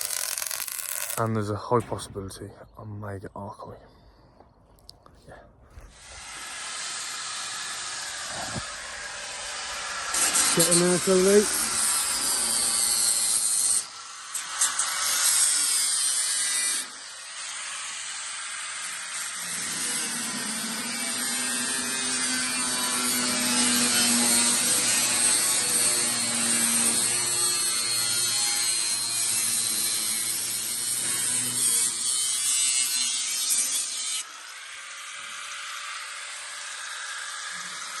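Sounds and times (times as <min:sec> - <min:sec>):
angle grinder cutting steel: 0:00.0 - 0:01.4, 0:05.9 - 0:38.0.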